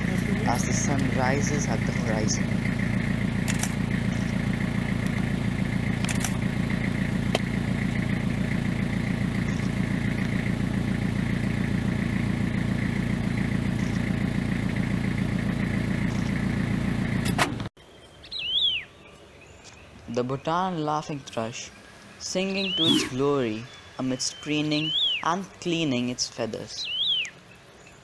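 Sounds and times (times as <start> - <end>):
engine running with fast pulse: 0.0 - 17.7.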